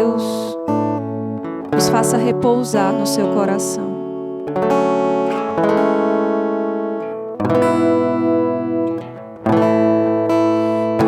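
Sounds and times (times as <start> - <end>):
acoustic guitar strumming chords: 0.0 - 11.0.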